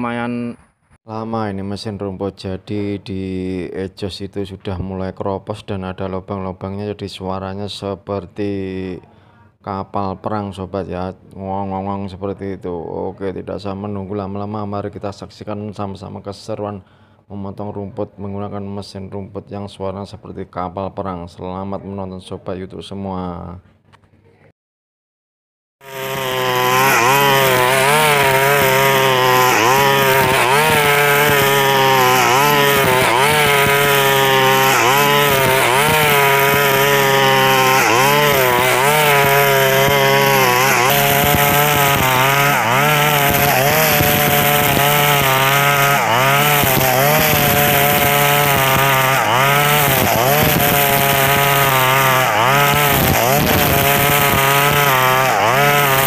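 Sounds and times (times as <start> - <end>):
brush cutter engine running: 25.8 - 56.0.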